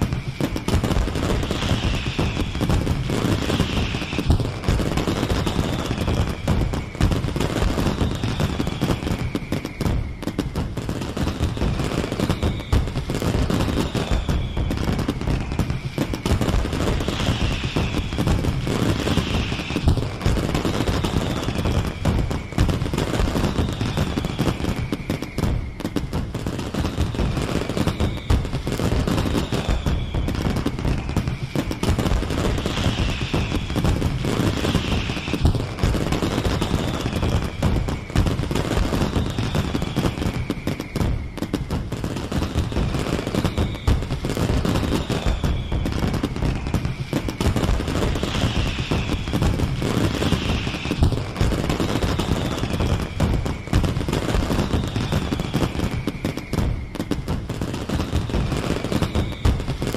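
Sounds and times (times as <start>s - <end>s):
fireworks crackling bangs: 0.0s - 59.9s
fireworks whistles gliding down: 0.0s - 59.9s.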